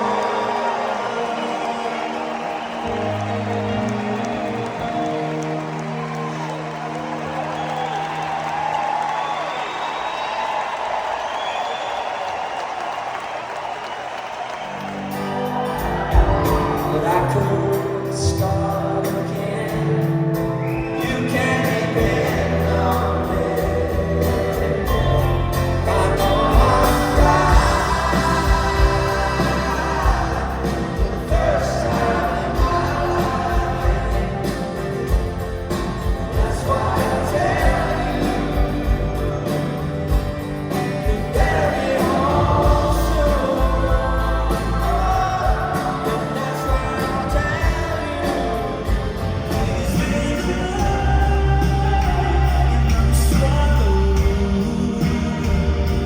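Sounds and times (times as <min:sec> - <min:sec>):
live rock band playing: 0:00.0 - 0:08.7, 0:14.7 - 0:56.0
person singing: 0:15.3 - 0:56.0.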